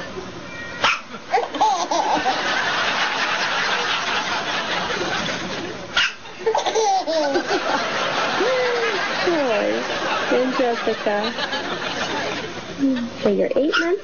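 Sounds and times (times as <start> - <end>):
baby laughing: 1.3 - 2.5, 6.4 - 7.7.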